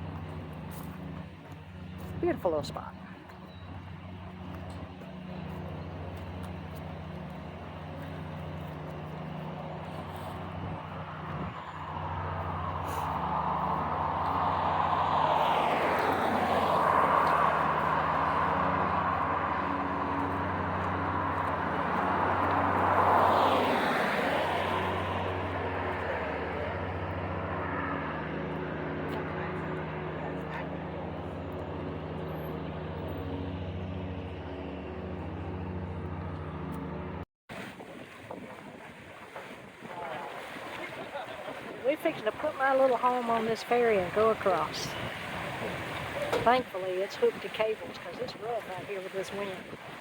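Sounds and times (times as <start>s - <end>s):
steady low engine hum: 0.0s - 50.0s
vehicles passing: 0.0s - 50.0s.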